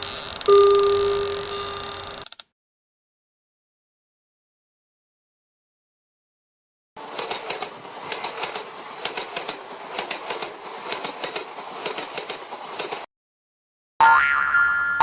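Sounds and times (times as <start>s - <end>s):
train rumble: 7.0s - 13.1s
train wheels clacking on rail joints: 7.0s - 13.1s.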